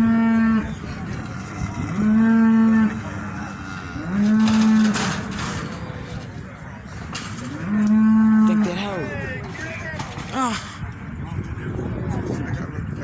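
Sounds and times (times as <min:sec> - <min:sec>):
cattle mooing: 0:00.0 - 0:09.2.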